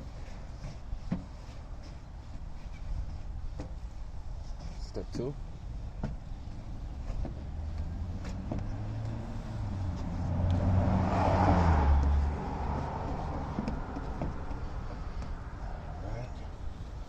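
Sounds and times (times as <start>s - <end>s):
car driving past: 7.0s - 16.0s.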